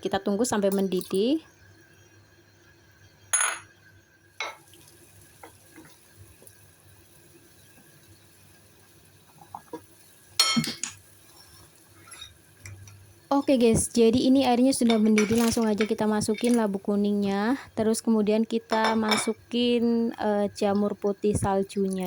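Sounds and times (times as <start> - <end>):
faint steady hiss: 0.0 - 22.0
pot and utensils clinking: 10.4 - 11.0, 14.8 - 16.7, 18.7 - 19.4.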